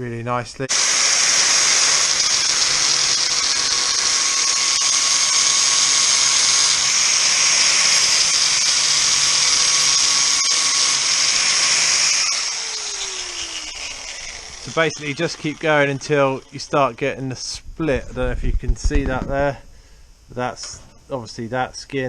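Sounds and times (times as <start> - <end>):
angle grinder grinding steel: 0.7 - 17.5.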